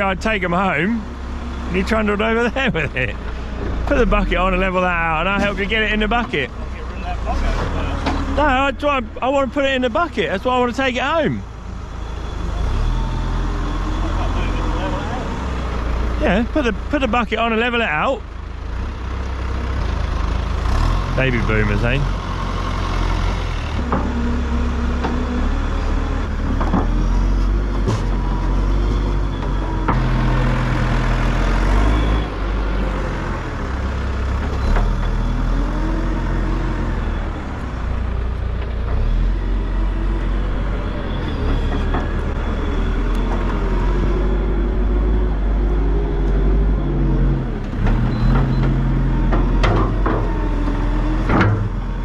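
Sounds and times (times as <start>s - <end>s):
tractor engine revving: 0.0s - 52.0s
sharp clicks and knocks: 47.8s - 50.4s.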